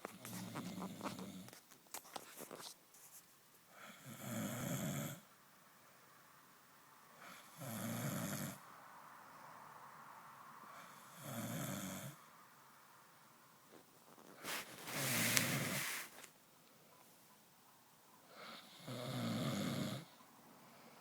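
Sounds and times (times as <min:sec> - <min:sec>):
person snoring: 0:00.2 - 0:01.5, 0:03.8 - 0:05.2, 0:10.8 - 0:12.2, 0:18.4 - 0:20.2.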